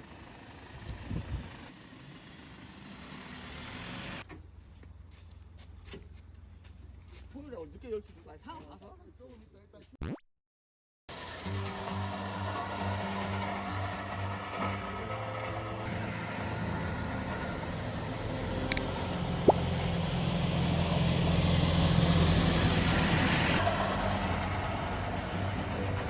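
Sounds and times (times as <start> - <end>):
vehicle engine running: 0.0 - 4.3, 11.1 - 26.0.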